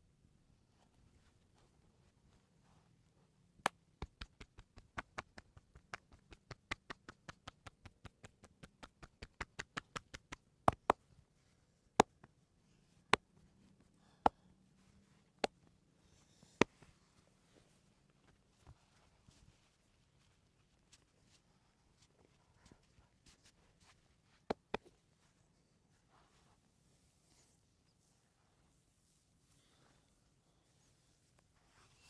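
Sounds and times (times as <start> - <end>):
hands tapping and slapping: 3.6 - 11.0, 24.5 - 24.9.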